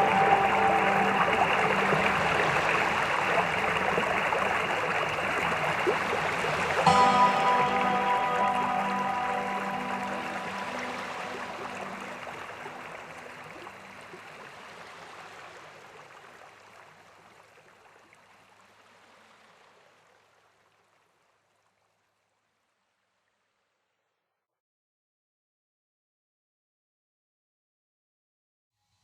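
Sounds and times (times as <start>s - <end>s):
faint held music notes: 0.0s - 14.3s
waterfall rushing: 0.0s - 15.6s.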